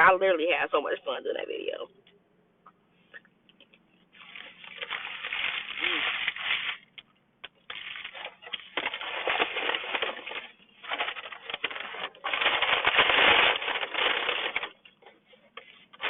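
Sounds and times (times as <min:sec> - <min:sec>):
crunching and chewing food: 0:03.6 - 0:16.0.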